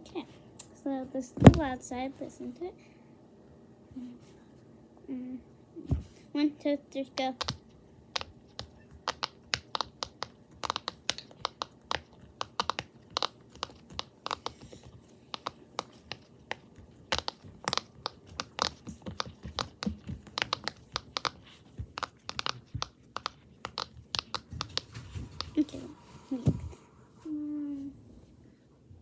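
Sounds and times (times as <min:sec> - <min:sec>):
fidget toy bubbles popping: 0:07.4 - 0:14.6.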